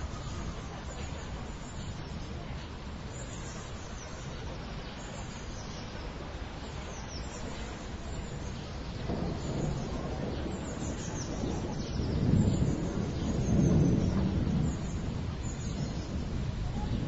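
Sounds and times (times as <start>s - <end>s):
distant city noise: 0.0s - 17.0s.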